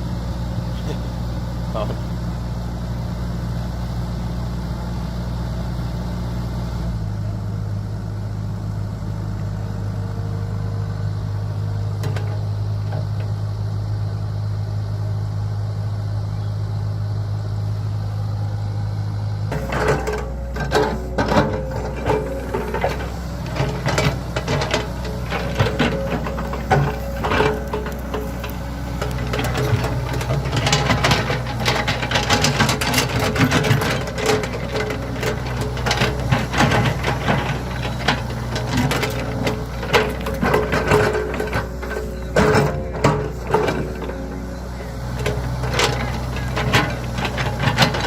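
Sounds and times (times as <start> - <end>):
diesel excavator engine running: 0.0 - 48.0
metallic clanks and rattles: 19.5 - 48.0.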